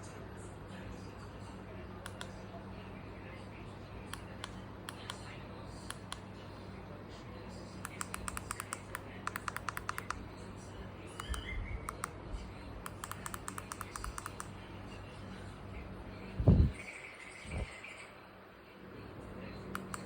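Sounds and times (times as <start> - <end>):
steady low hum: 0.0 - 20.0
light sharp clicks: 2.0 - 2.4, 11.2 - 12.2, 19.7 - 20.0.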